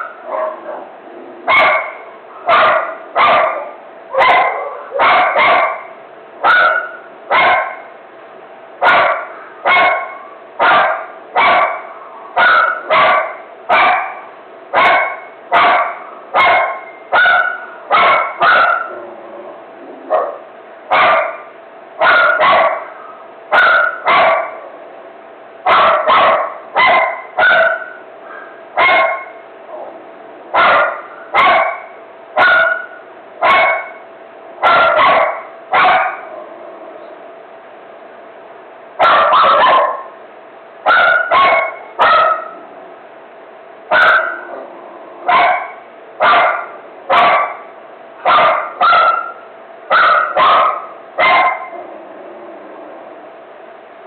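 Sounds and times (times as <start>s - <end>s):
dog barking: 0.0s - 0.9s, 1.5s - 7.9s, 8.8s - 19.0s, 20.1s - 24.7s, 25.7s - 29.4s, 30.6s - 34.0s, 34.6s - 36.3s, 39.0s - 40.2s, 40.9s - 42.6s, 43.9s - 51.8s.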